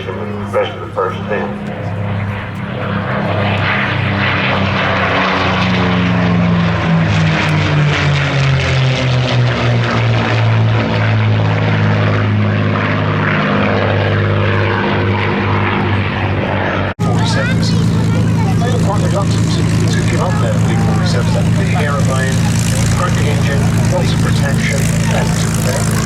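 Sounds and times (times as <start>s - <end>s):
propeller plane flying past: 0.0s - 26.0s.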